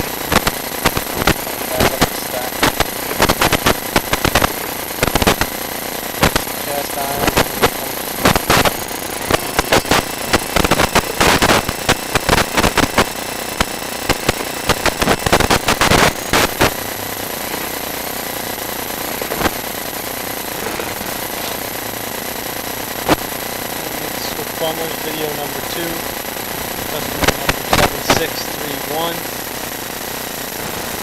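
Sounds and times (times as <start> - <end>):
faint high whine: 0.0 - 31.0
steady hiss: 23.1 - 29.3.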